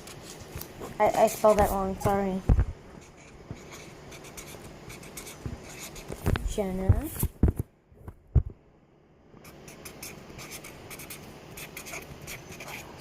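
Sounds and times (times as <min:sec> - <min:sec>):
scratchy pen strokes: 0:03.0 - 0:06.2, 0:09.4 - 0:13.0.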